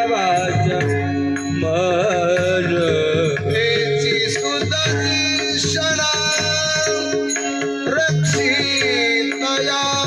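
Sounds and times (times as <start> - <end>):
drum strokes: 0.0 - 10.0
sustained devotional melody: 0.0 - 10.0.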